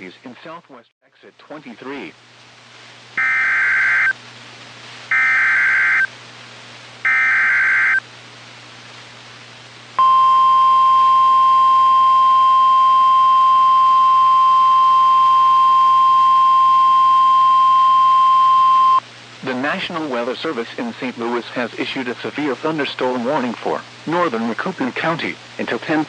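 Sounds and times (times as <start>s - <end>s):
steady alarm tone: 3.2s - 4.2s, 5.1s - 6.1s, 7.0s - 8.0s, 10.0s - 19.0s
two-tone data screech: 3.2s - 4.2s, 5.1s - 6.1s, 7.1s - 8.0s.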